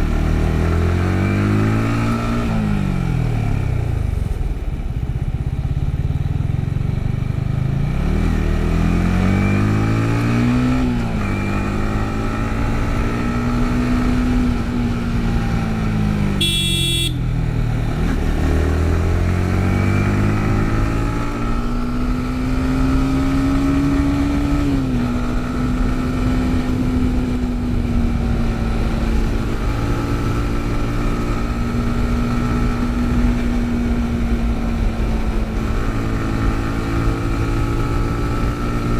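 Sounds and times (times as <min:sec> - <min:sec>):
motorcycle engine accelerating: 0:00.0 - 0:38.9
short high-pitched beep: 0:16.4 - 0:17.2.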